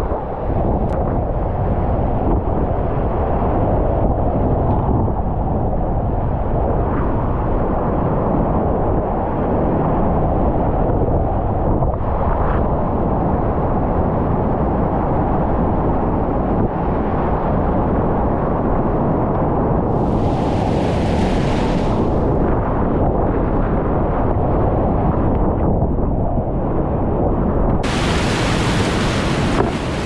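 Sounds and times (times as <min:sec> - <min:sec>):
river rapids rushing: 0:19.9 - 0:22.3, 0:27.8 - 0:30.0
splashing spray hiss: 0:19.9 - 0:22.4, 0:27.8 - 0:30.0.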